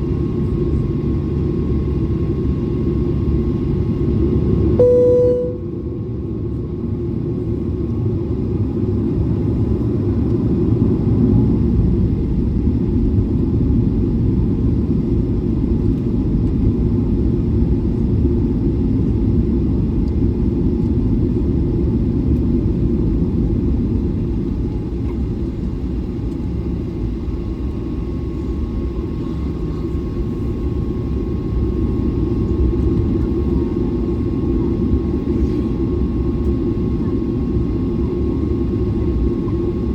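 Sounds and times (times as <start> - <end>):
airliner cabin engine rumble: 0.0 - 39.9
faint steady tone: 4.8 - 5.7.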